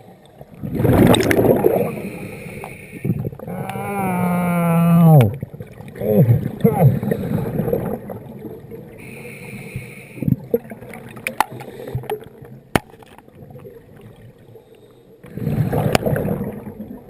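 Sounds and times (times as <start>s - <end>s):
bubbles gurgling underwater: 0.0s - 9.1s, 10.2s - 12.7s, 13.3s - 14.5s, 15.2s - 17.0s
regulator inhale hiss: 1.9s - 3.2s, 9.0s - 10.3s.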